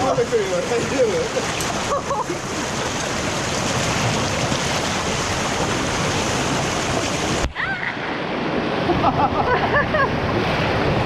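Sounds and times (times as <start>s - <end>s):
mountain stream rushing: 0.0s - 11.0s.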